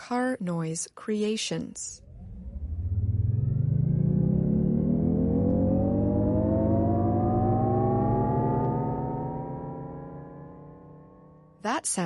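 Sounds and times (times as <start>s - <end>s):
electric car warning hum: 2.0s - 11.6s.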